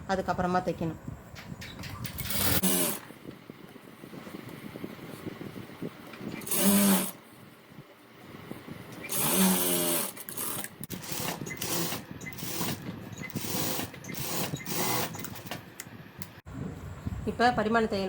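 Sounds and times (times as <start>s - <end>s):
sewing machine stitching: 2.1s - 3.1s, 6.4s - 7.2s, 9.0s - 15.6s.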